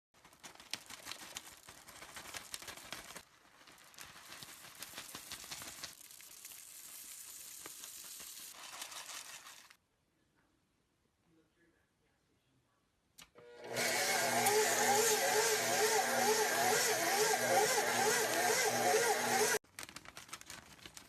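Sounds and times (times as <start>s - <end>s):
slime crackling and popping: 0.2s - 8.6s.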